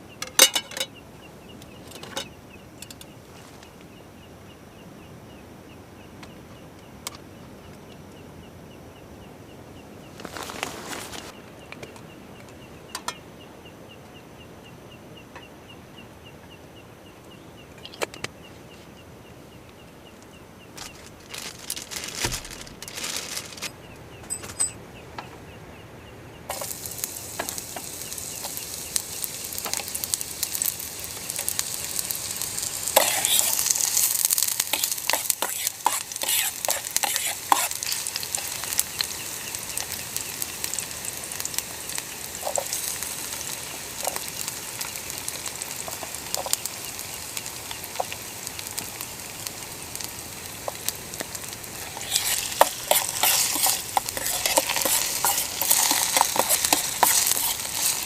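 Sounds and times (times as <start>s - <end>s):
frying sizzle with crackles: 10.1s - 13.3s, 19.7s - 23.8s, 26.5s - 58.0s.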